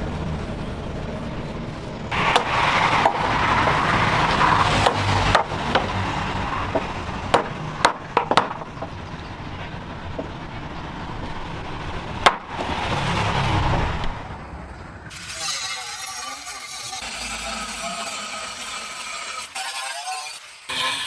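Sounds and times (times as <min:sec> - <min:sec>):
steady rushing noise: 0:00.0 - 0:15.1.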